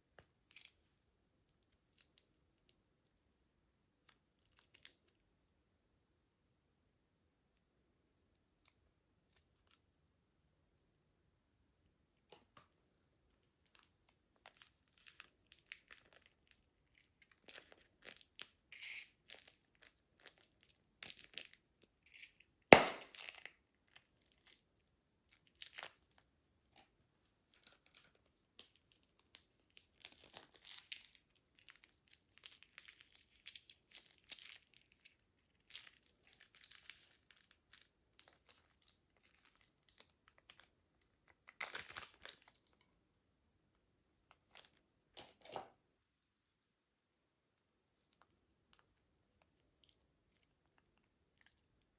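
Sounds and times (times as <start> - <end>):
sharp snap: 22.8 - 23.2.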